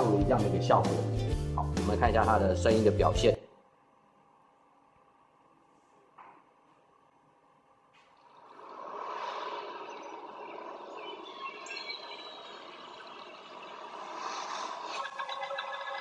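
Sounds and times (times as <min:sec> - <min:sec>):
ambient sound wash: 0:08.2 - 0:16.0
short chirping tones: 0:09.4 - 0:14.1.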